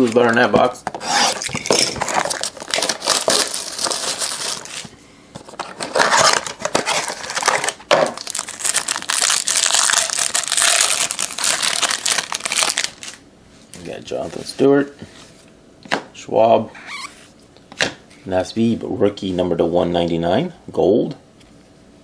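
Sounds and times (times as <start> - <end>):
plastic wrapping tearing and crinkling: 1.0 - 4.9, 5.6 - 13.2.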